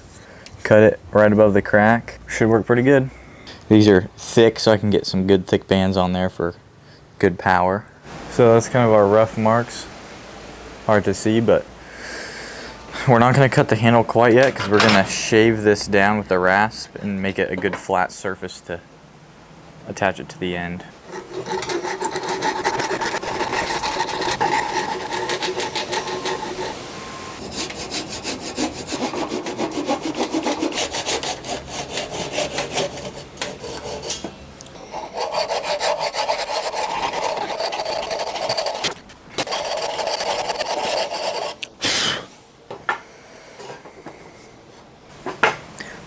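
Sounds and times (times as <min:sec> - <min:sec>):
rasp filing wood: 0:21.1 - 0:34.2, 0:34.9 - 0:41.6.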